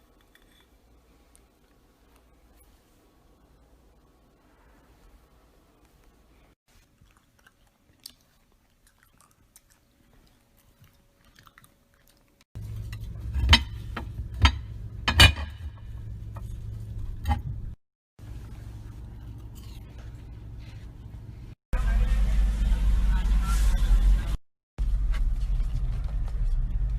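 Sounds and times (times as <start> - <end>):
chewing crunchy food: 6.7 - 12.5
low hum: 12.6 - 26.9.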